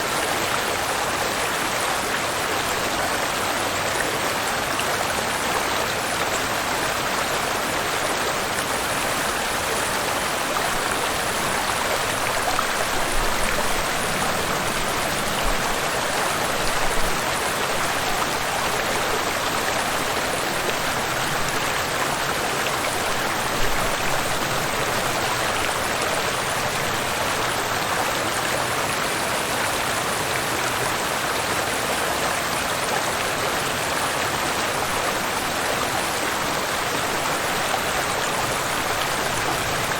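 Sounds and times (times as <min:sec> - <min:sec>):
waterfall and river rushing: 0:00.0 - 0:39.9.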